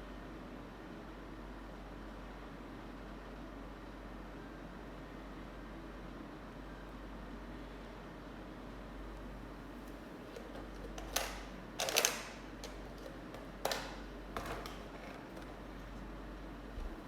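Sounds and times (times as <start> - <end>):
plastic packaging clicks and crackles: 9.9 - 16.0.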